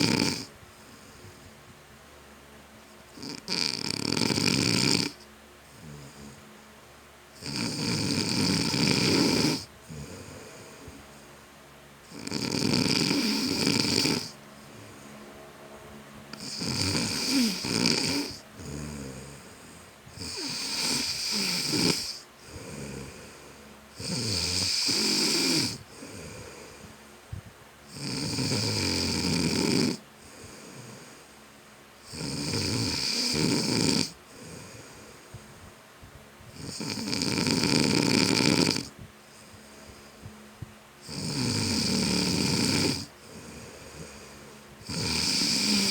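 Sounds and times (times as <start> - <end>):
man snoring: 0.0 - 1.3, 3.1 - 5.2, 5.8 - 6.4, 7.4 - 11.0, 12.1 - 15.0, 16.3 - 27.0, 27.9 - 31.3, 32.0 - 35.2, 36.6 - 40.0, 41.0 - 45.9
quiet breathing: 0.0 - 1.9, 5.1 - 8.1, 9.1 - 12.3, 13.1 - 24.0, 24.6 - 27.6, 30.0 - 31.8, 34.1 - 36.8, 38.8 - 41.2, 43.0 - 45.9.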